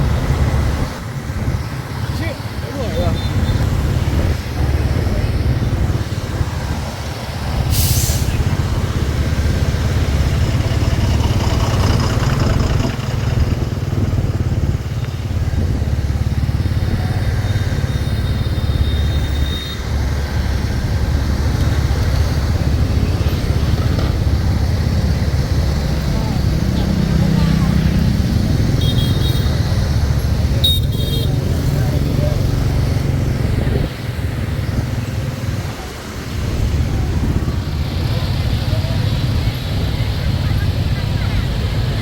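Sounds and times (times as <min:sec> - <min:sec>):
diesel locomotive rumbling: 0:00.0 - 0:42.0
sharp air hiss: 0:07.6 - 0:08.6.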